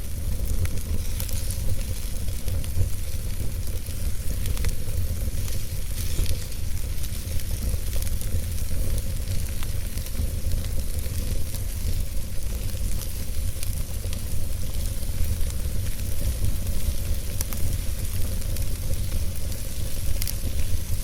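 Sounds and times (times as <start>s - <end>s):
burning logs crackling and popping: 0.0s - 21.0s
low rumble of flames: 0.0s - 21.0s.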